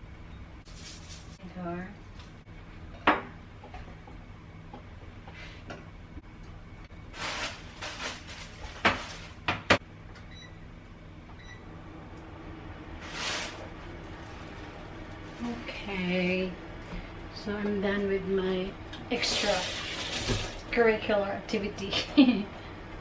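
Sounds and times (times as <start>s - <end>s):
rustling: 0.7s - 1.4s, 7.1s - 9.4s, 13.0s - 15.6s.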